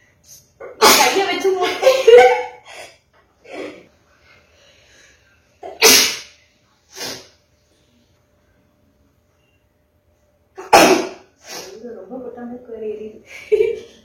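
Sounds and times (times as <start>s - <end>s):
person sneezing: 0.7s - 1.2s, 5.6s - 6.3s, 10.6s - 11.7s
sniff: 6.9s - 7.4s.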